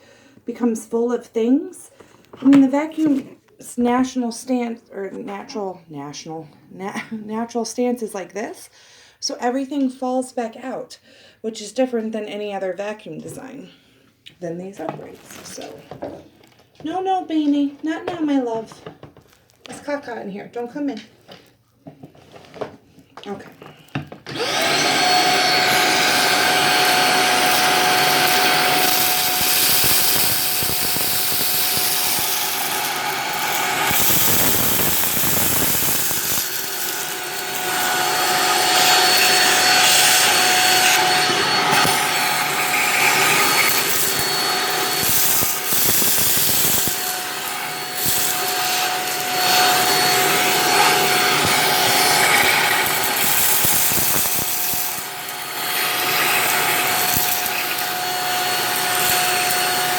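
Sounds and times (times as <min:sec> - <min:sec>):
vacuum cleaner motor whine: 0:24.2 - 0:59.9
rice rattling through vacuum nozzle: 0:24.4 - 0:59.9.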